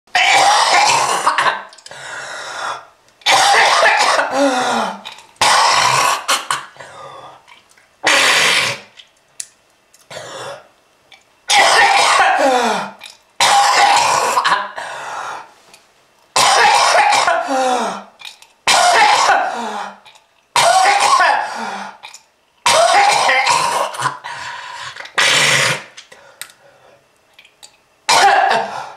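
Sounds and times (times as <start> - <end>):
person coughing and hacking: 0.1 - 1.7, 3.2 - 7.0, 8.0 - 8.9, 11.5 - 14.8, 16.4 - 18.1, 18.7 - 20.0, 20.6 - 21.7, 22.6 - 24.2, 25.1 - 25.9, 28.1 - 28.9.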